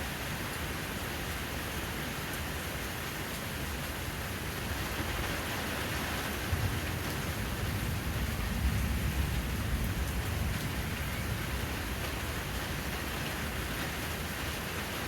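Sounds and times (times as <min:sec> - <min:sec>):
rain pattering on a surface: 0:00.0 - 0:15.0.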